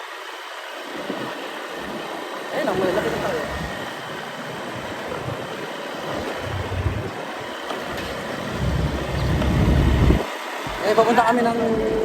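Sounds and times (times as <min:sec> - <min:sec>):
wind buffeting microphone: 0:02.7 - 0:10.9
road and air noise rushing: 0:06.2 - 0:10.3.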